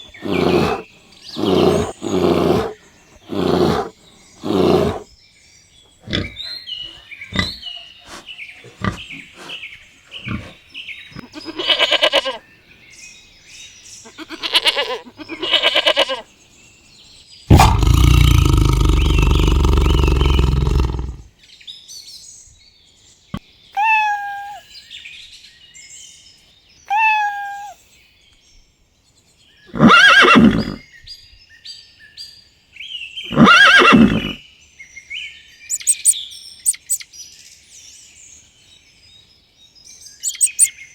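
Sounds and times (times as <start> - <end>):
animal pitched cries: 0.0 - 0.8, 1.4 - 5.1, 11.2 - 12.4, 14.1 - 16.2, 17.5 - 21.3, 23.8 - 24.6, 26.9 - 27.8, 29.7 - 30.8, 33.3 - 34.4, 35.7 - 37.0, 40.2 - 40.7
animal bellowing: 0.0 - 5.1, 6.0 - 9.6, 10.2 - 10.6, 17.5 - 21.3, 33.3 - 34.4, 40.3 - 40.7
animal chirps: 0.0 - 5.1, 6.0 - 9.6, 17.5 - 21.3, 23.8 - 24.7, 26.9 - 27.8, 35.7 - 37.1, 40.2 - 40.8.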